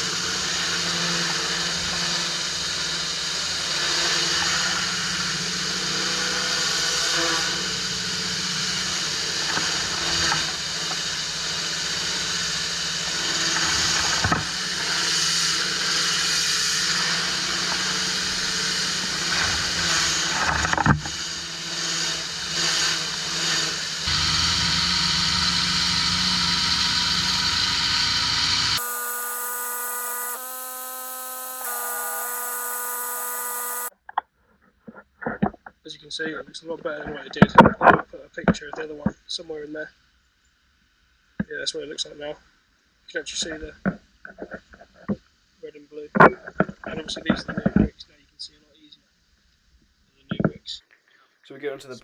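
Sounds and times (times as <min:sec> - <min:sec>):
pressure washer engine hum: 0:00.0 - 0:33.9
water jet hissing: 0:07.6 - 0:33.9.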